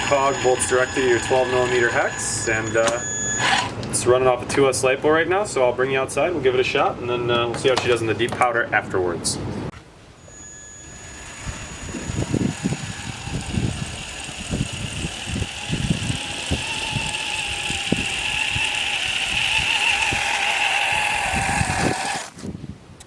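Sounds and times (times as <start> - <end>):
electric motor whining: 0.0 - 3.8, 10.2 - 22.4.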